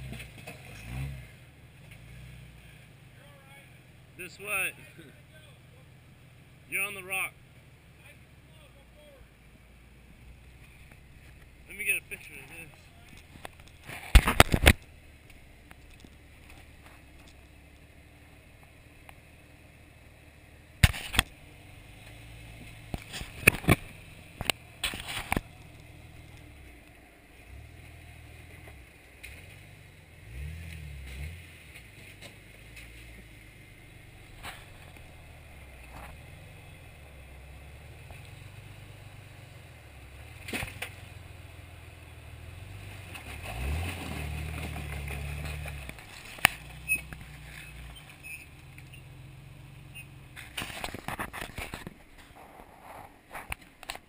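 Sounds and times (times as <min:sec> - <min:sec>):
engine running at low revs: 0:00.0 - 0:53.3
knocks and clunks on rocks: 0:12.5 - 0:14.9, 0:22.9 - 0:25.5.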